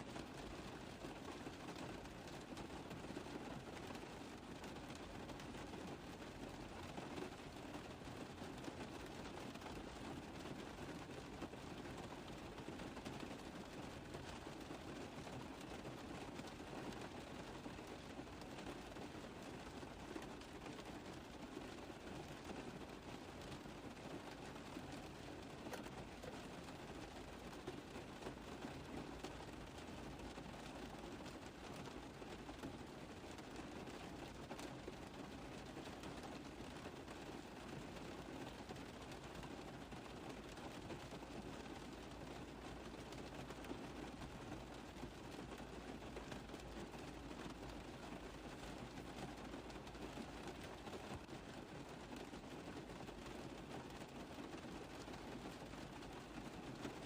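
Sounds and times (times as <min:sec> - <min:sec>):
rain tapping on a car roof: 0:00.0 - 0:57.0.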